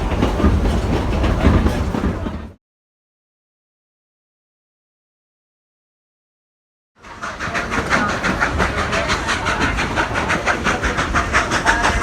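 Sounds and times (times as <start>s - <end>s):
steam train chugging: 0.0s - 2.6s, 7.0s - 12.0s
steam hiss: 7.0s - 12.0s.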